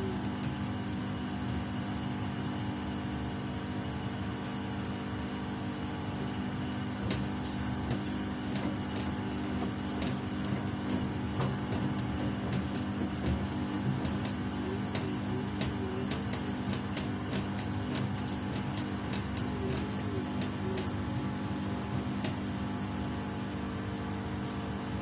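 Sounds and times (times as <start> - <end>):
washing machine humming: 0.0 - 25.0
sharp clicks and ticks: 7.1 - 21.0.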